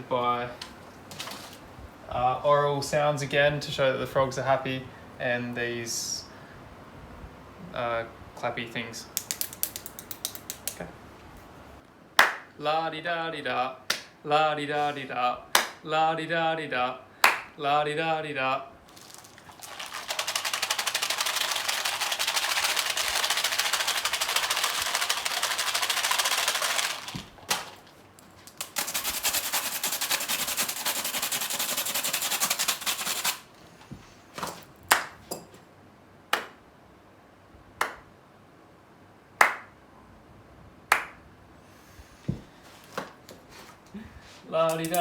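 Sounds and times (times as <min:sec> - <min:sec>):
sharp clapper claps: 0:09.2 - 0:10.8, 0:12.2 - 0:12.6, 0:13.9 - 0:14.1, 0:15.5 - 0:15.8, 0:17.2 - 0:17.5, 0:34.9 - 0:35.2, 0:36.3 - 0:36.6, 0:37.8 - 0:38.1, 0:39.4 - 0:39.8, 0:40.9 - 0:41.2, 0:44.7 - 0:45.0
hand clapper rattling: 0:19.6 - 0:27.1.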